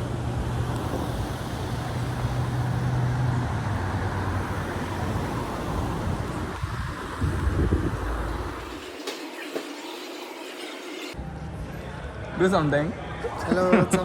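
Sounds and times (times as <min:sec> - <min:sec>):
low engine hum: 0:00.0 - 0:08.8
traffic noise: 0:00.0 - 0:09.8.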